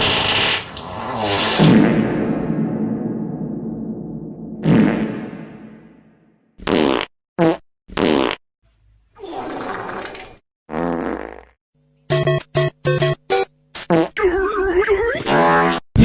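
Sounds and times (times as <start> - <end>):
fart sound effects: 0.0 - 2.3, 4.6 - 5.4, 6.6 - 8.4, 9.3 - 11.6, 13.8 - 14.3.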